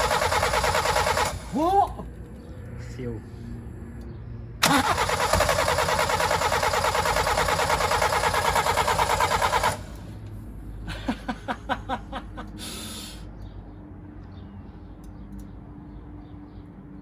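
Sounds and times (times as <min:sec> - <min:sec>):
engine cranking on starter: 0:00.0 - 0:02.0, 0:04.6 - 0:10.2.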